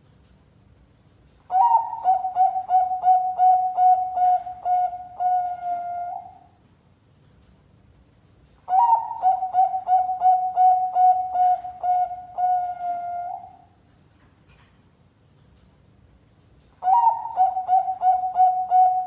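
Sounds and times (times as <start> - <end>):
dove cooing: 1.5 - 6.5, 8.7 - 13.7, 16.8 - 19.0.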